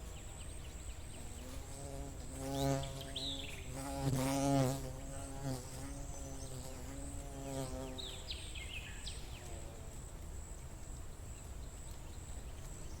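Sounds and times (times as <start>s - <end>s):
flying insect buzzing: 1.2s - 8.3s.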